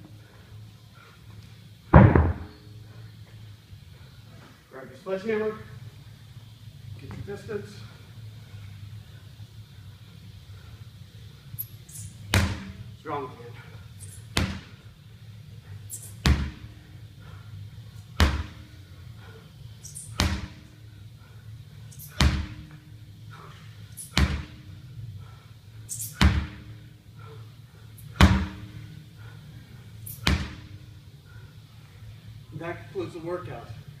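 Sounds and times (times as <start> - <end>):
sledgehammer thudding on tire: 1.9 - 2.6, 18.2 - 18.6, 20.2 - 20.6, 22.1 - 22.6, 24.2 - 24.6, 26.1 - 26.6, 28.2 - 28.6, 30.2 - 30.6.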